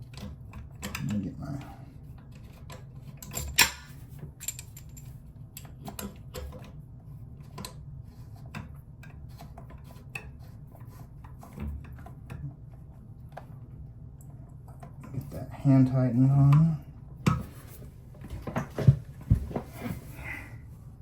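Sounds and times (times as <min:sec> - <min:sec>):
steady low hum: 0:12.1 - 0:21.0.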